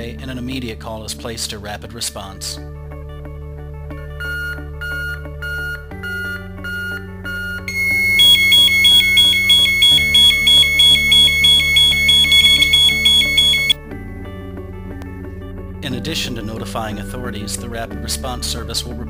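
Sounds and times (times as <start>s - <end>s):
background music: 0.0s - 19.0s
pulsing electronic alarm siren: 7.7s - 13.8s
short high beeps: 7.7s - 13.8s.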